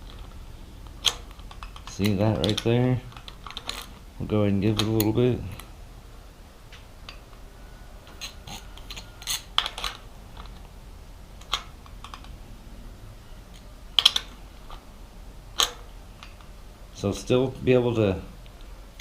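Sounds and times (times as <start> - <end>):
metal clicks of hand tools: 0.1 - 4.0.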